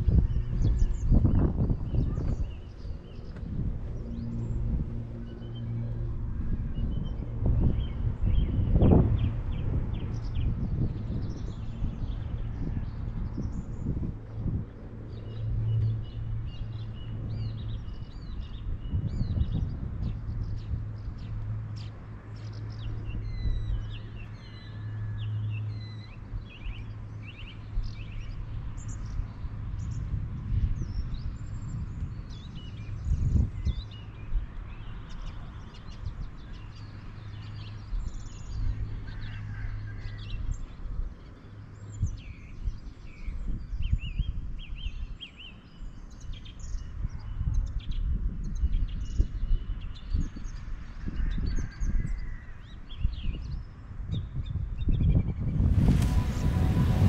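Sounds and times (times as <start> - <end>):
low outdoor noise: 55.6 - 57.0.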